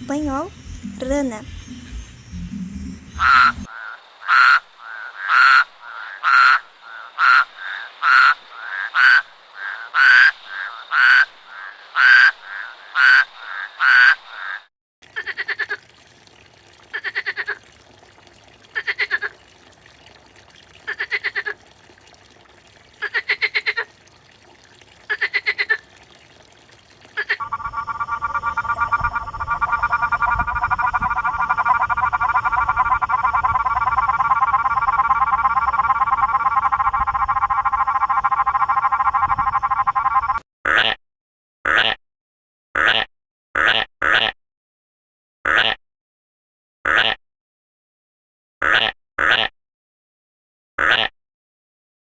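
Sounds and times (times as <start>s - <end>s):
rattling pulsed frog calls: 0.7s - 14.2s, 15.1s - 40.4s
frogs croaking: 3.1s - 40.4s
trilling frog chorus: 3.2s - 40.2s.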